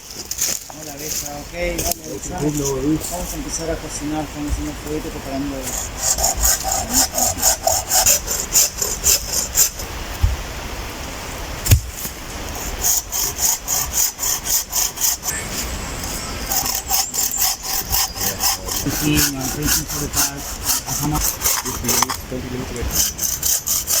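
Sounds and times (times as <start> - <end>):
hand saw cutting wood: 0.2 - 10.0, 11.9 - 24.0.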